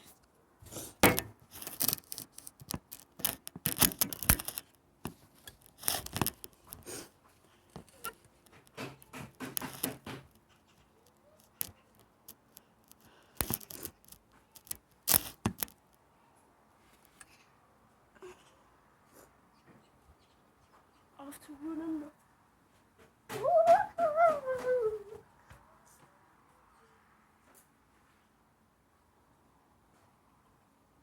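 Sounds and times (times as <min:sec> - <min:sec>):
phone handling clicks and rustles: 0:01.0 - 0:06.8.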